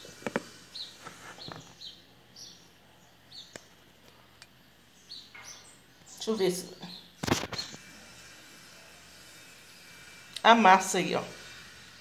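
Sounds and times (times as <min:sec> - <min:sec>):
small bird chirping: 0:00.5 - 0:03.9, 0:04.6 - 0:07.8.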